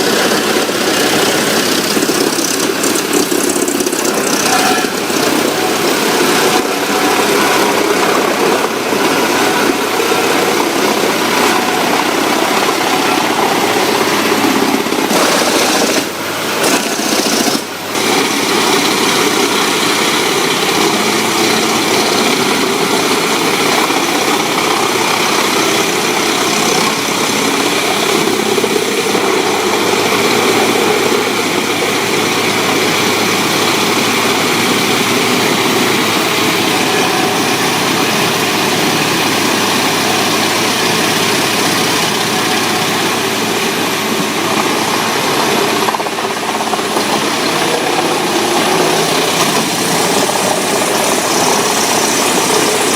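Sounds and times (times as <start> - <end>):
wood chipper engine running: 0.0 - 52.9.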